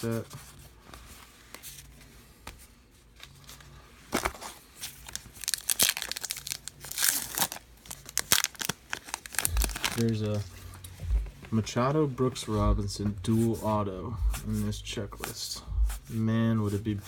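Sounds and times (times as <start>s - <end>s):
wrapper tearing and crinkling: 4.9s - 10.5s.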